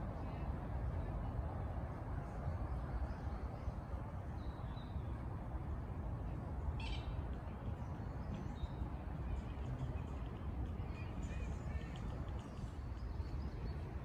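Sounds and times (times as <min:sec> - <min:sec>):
low rumble of wind or traffic: 0:00.0 - 0:14.0.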